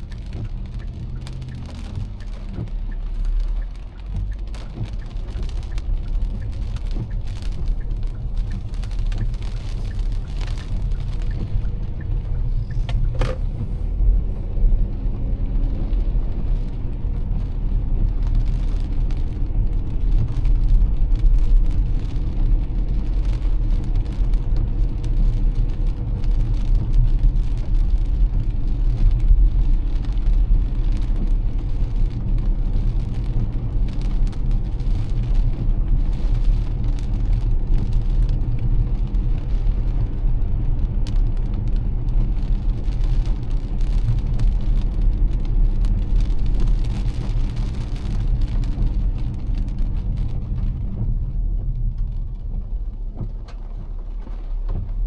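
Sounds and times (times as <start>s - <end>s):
car engine and tyres on wet road: 0.0s - 55.0s
raindrops tapping: 0.0s - 55.0s.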